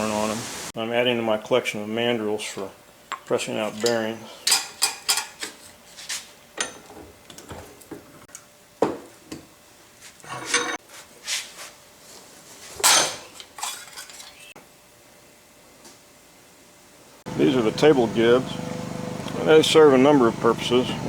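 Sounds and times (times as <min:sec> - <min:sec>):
steel parts clinking: 0:10.2 - 0:10.8.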